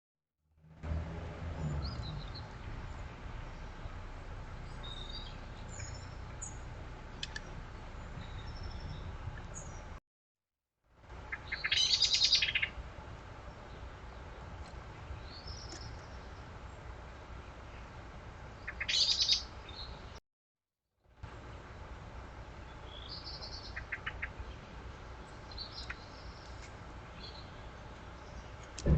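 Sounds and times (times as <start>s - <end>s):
low background rumble: 0.7s - 10.0s, 21.2s - 28.9s
songbirds chirping: 0.9s - 10.0s, 11.1s - 20.2s, 21.2s - 28.9s
rapid bird chattering call: 11.3s - 12.8s, 18.7s - 19.5s, 22.9s - 24.5s.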